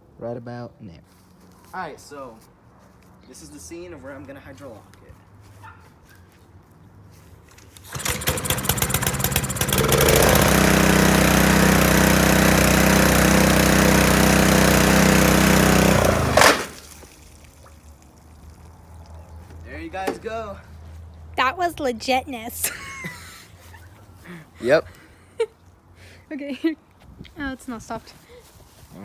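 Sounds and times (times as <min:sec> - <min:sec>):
small engine running: 0:07.8 - 0:17.0
engine stopping with sharp knock: 0:07.9 - 0:17.0.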